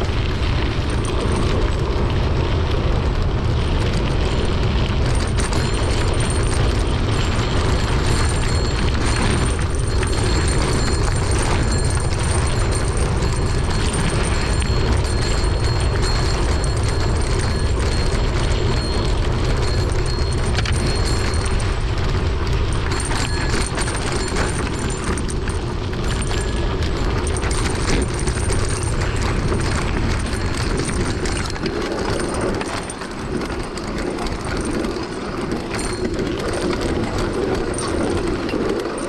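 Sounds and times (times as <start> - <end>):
bike rattling and clicking: 0.0 - 39.0
wind rumbling on microphone: 0.0 - 39.0.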